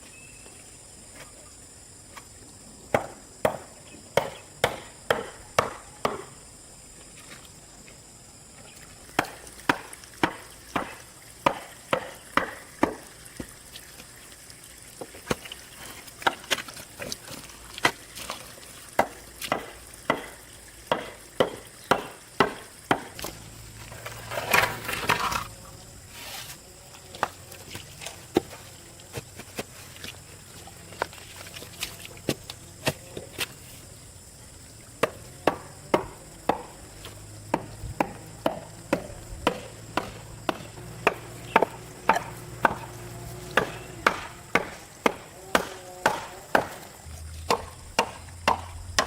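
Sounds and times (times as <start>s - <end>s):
scraping or rustling noise: 23.8s - 26.6s
hand tool striking: 47.4s - 49.0s.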